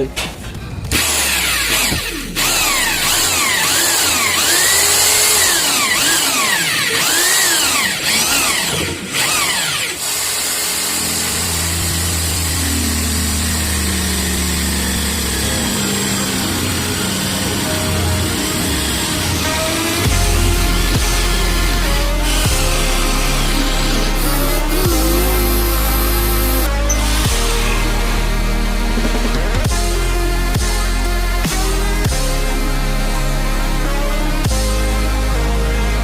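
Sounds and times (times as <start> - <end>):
electric drill whining: 0.8 - 29.7
music with low beat: 17.5 - 36.0.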